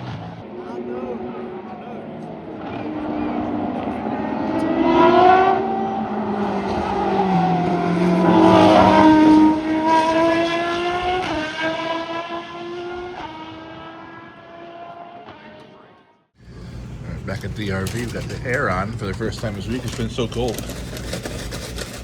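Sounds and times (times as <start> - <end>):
race cars passing at speed: 0.0 - 16.2.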